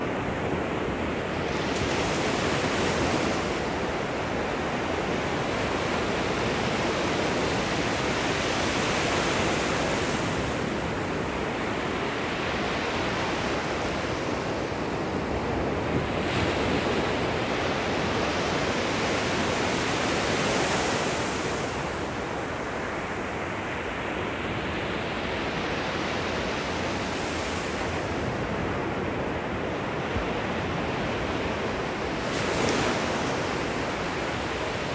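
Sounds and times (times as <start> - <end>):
small waves breaking on shore: 0.1 - 34.9.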